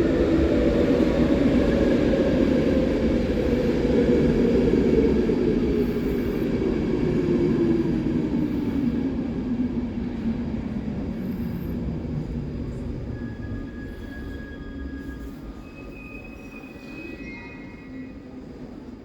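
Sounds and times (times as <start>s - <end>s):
train rumbling on tracks: 0.0s - 19.0s
high wheel squeal: 13.1s - 18.2s.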